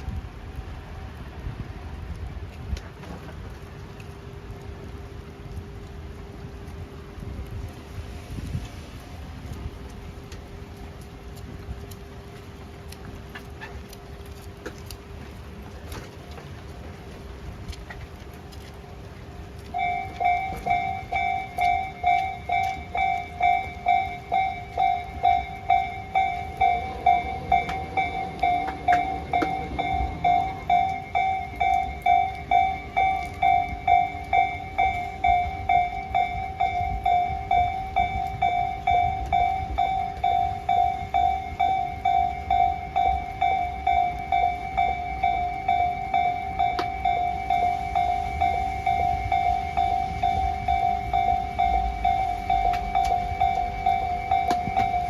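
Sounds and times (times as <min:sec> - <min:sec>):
railroad crossing bell ringing: 0:19.2 - 0:55.0.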